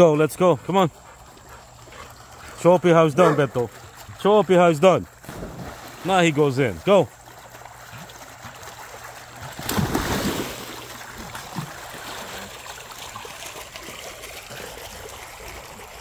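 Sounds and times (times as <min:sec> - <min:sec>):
pool water sloshing and trickling: 0:00.0 - 0:16.0
dog splashing into pool: 0:02.1 - 0:16.0.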